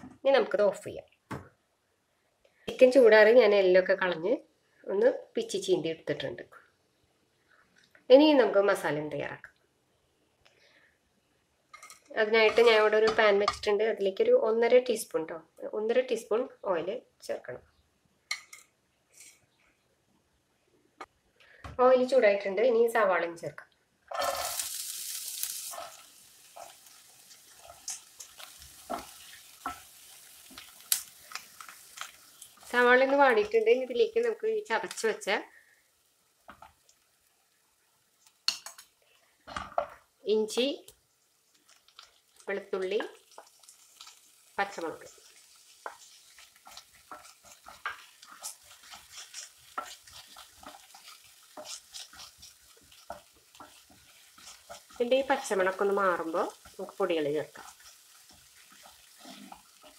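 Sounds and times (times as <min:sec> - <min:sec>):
spatula scraping a pan: 0:24.1 - 0:24.7, 0:25.5 - 0:31.4, 0:45.2 - 0:55.2, 0:57.4 - 0:59.9
onion sizzling in hot oil: 0:24.1 - 0:59.9.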